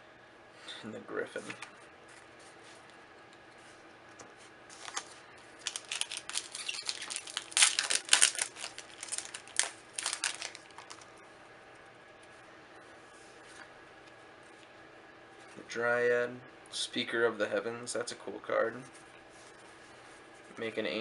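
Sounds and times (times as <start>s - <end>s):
foil wrapper crinkling: 4.7s - 11.1s.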